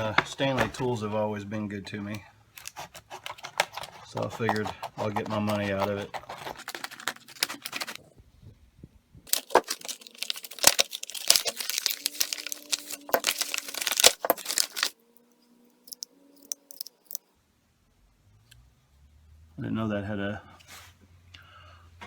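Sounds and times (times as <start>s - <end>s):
plastic packaging being torn open: 5.4s - 8.0s, 9.3s - 15.0s, 15.9s - 17.2s.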